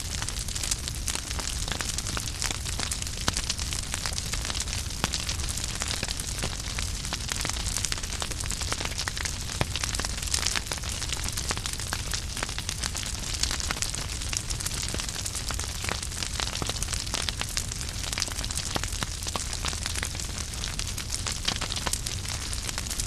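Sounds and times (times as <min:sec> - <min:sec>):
fire flames hissing and rumbling: 0:00.0 - 0:23.0
logs crackling and popping: 0:00.0 - 0:23.0.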